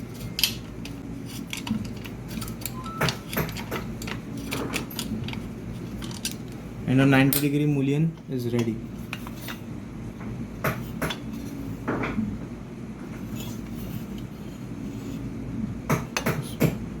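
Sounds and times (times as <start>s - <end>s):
metal parts clinking: 0.4s - 6.5s.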